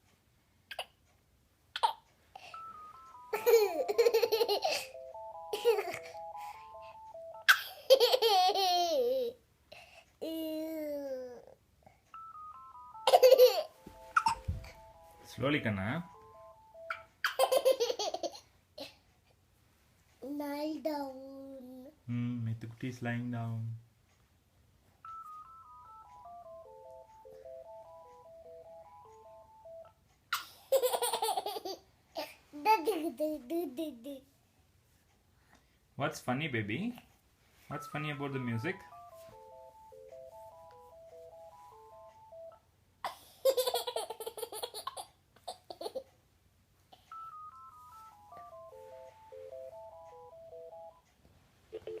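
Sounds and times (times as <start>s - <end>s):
phone ringtone melody: 2.4s - 8.4s, 12.1s - 17.1s, 25.0s - 30.0s, 37.7s - 42.6s, 47.0s - 51.1s
child laughing: 3.4s - 6.2s, 7.5s - 9.4s, 13.1s - 14.5s, 17.2s - 19.0s, 30.7s - 34.2s, 43.4s - 46.1s.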